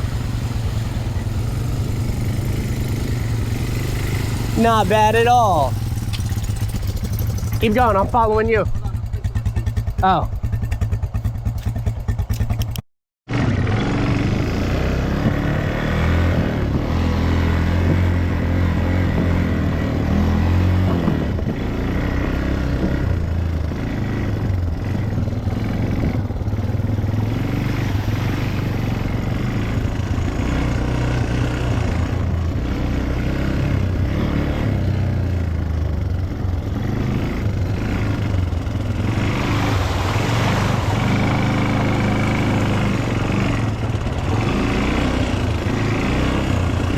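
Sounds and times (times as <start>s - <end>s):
atv engine running: 0.0s - 46.9s.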